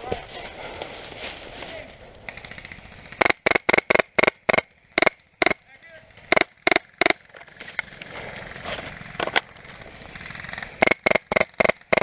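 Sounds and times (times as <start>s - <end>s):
rustling and scuffling: 0.0s - 2.2s, 7.3s - 10.8s.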